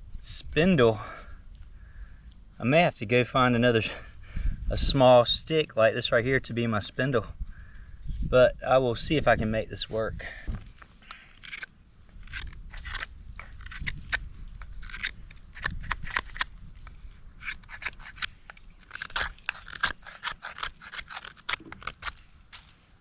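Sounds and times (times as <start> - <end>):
knife shaving a stick: 11.2 - 23.0.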